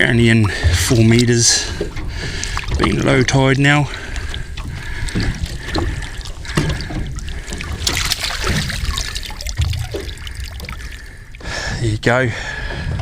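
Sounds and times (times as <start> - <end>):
low wind rumble: 0.0 - 13.0
water lapping against boat hull: 0.0 - 13.0
dull knocks: 0.4 - 3.6, 4.3 - 10.9.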